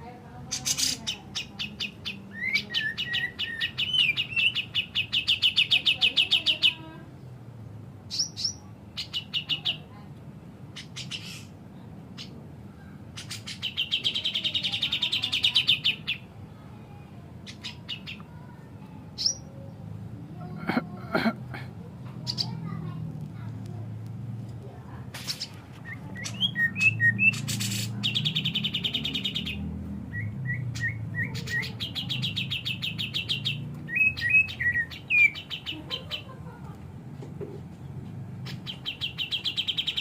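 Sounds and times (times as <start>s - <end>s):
bird chattering calls: 0.5s - 6.8s, 8.1s - 9.9s, 10.7s - 11.6s, 13.1s - 16.3s, 17.4s - 18.4s, 22.2s - 22.7s, 25.2s - 36.4s, 38.4s - 40.0s.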